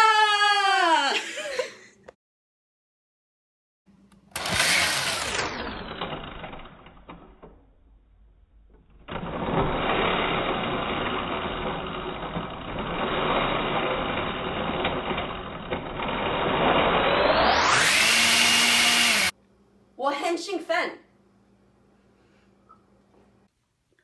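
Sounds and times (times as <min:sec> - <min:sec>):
blender whining: 0:04.3 - 0:07.2, 0:09.0 - 0:19.4
ice being blended: 0:04.4 - 0:06.8, 0:09.1 - 0:19.3.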